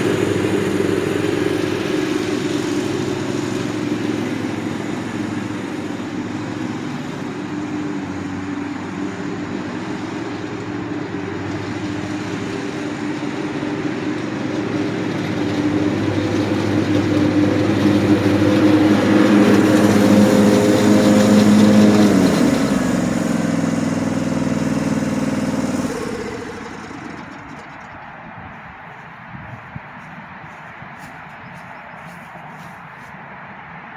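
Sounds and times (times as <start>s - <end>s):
riding mower engine running: 0.0s - 33.9s.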